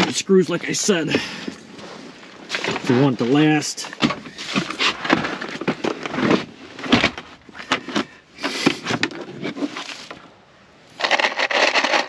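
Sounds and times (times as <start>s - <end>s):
screws clinking and rattling: 11.0s - 12.0s.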